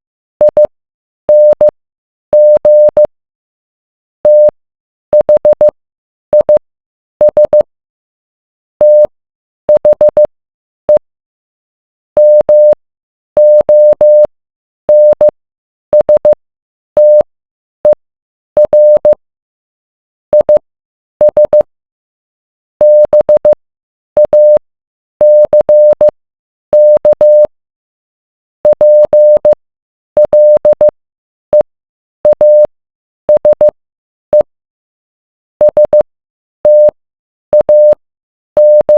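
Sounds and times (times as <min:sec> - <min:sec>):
morse code beeps: 0:00.4 - 0:00.7, 0:01.3 - 0:01.7, 0:02.4 - 0:03.1, 0:04.3 - 0:04.5, 0:05.2 - 0:05.7, 0:06.4 - 0:06.6, 0:07.2 - 0:07.6, 0:08.8 - 0:09.1, 0:09.8 - 0:10.3, 0:12.2 - 0:12.8, 0:13.4 - 0:14.3, 0:14.9 - 0:15.3, 0:16.0 - 0:16.4, 0:17.0 - 0:17.2, 0:18.6 - 0:19.2, 0:20.4 - 0:20.6, 0:21.2 - 0:21.6, 0:22.8 - 0:23.6, 0:24.2 - 0:24.6, 0:25.2 - 0:26.1, 0:26.8 - 0:27.5, 0:28.7 - 0:29.6, 0:30.2 - 0:30.9, 0:32.3 - 0:32.7, 0:33.3 - 0:33.7, 0:35.6 - 0:36.0, 0:36.6 - 0:38.0, 0:38.6 - 0:38.9.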